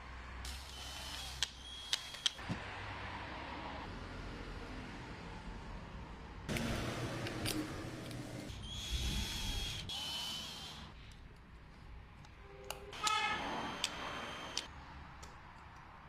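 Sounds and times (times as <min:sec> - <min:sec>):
stepper motors whirring: 0:00.5 - 0:02.4, 0:08.5 - 0:11.0.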